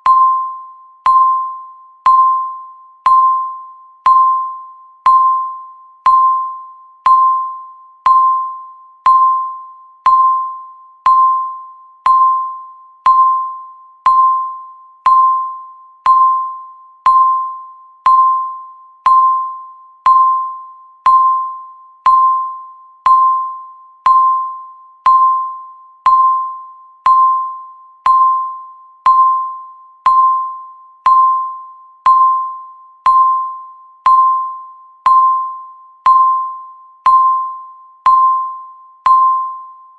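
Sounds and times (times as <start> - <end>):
countdown timer beeping: 0.0 - 39.8.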